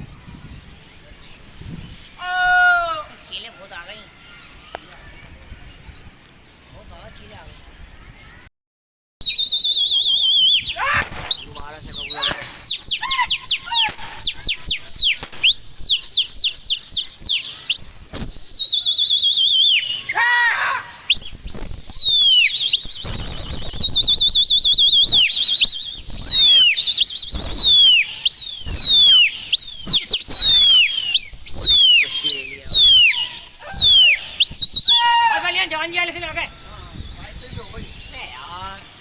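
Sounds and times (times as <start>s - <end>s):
kites calling with shrill whistles: 9.2s - 39.0s.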